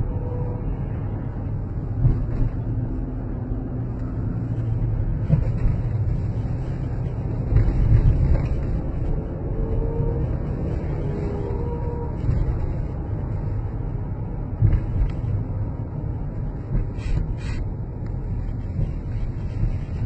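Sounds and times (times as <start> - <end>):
car engine rumbling: 0.0 - 20.0.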